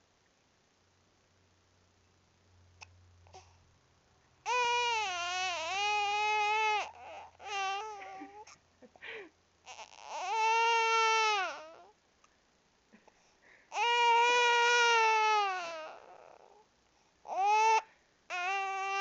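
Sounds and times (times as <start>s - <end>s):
baby crying: 4.5s - 8.6s, 9.7s - 11.9s, 13.7s - 16.6s, 17.3s - 19.0s.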